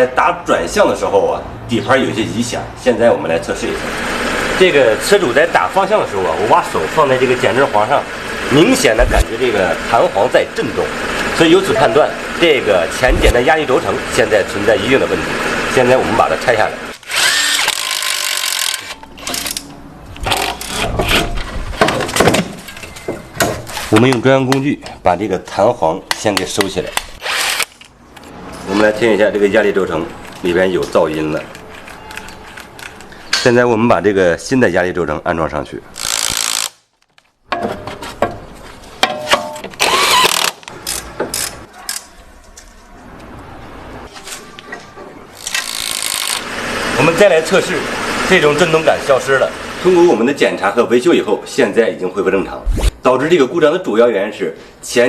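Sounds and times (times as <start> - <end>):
pneumatic tool hissing and whirring: 17.0 - 19.6, 27.2 - 27.8, 36.0 - 36.8, 39.8 - 41.6, 45.4 - 46.5
metal parts knocking and scraping: 37.5 - 39.8
metal clanks of tools: 39.0 - 39.8.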